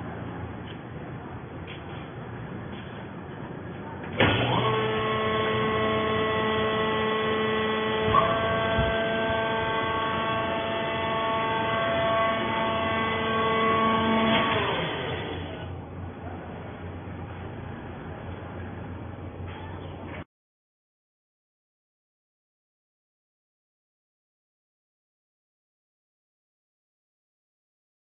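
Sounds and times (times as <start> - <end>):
baler electric hum-whine: 0.0 - 20.3.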